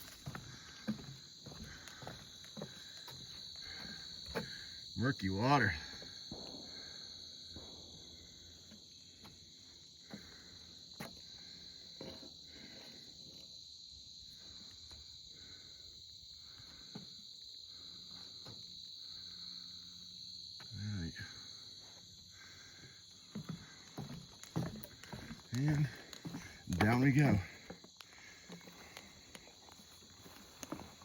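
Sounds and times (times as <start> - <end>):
footsteps on trail: 0.0 - 13.0, 21.7 - 31.0
crickets and insects chorus: 0.0 - 31.0.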